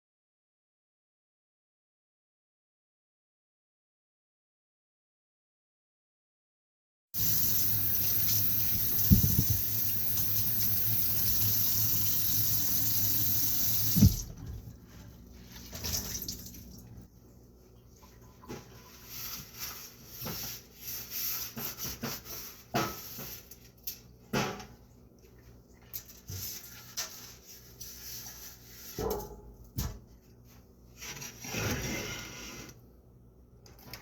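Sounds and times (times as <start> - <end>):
tap running into sink: 8.0 - 14.4.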